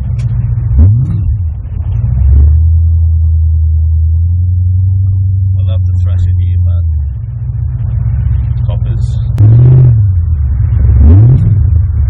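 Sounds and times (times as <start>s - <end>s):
car engine droning and revving: 0.0s - 12.0s.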